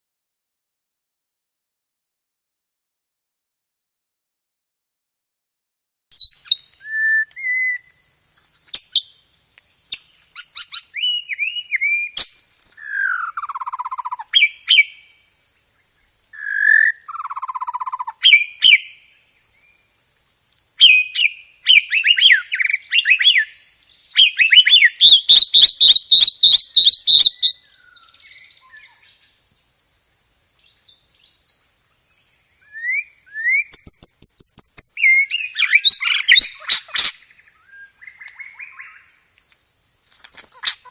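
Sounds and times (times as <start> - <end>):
bird singing whistles and chatter: 6.2 - 8.0, 20.8 - 27.6, 32.6 - 39.0.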